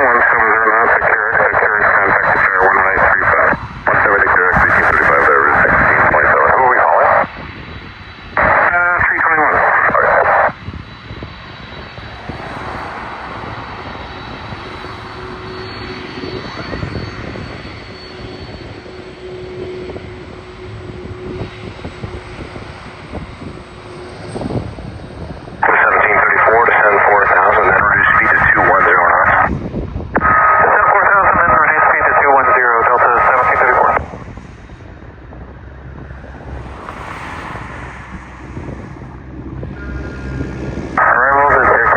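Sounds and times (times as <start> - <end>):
jet engines rushing: 0.0 - 41.9
low rumble: 9.5 - 17.4.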